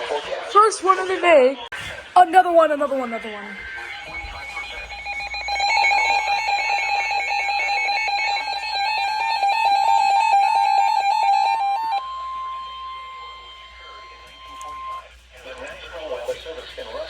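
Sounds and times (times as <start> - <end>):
electronic alert warble: 3.7 - 13.4.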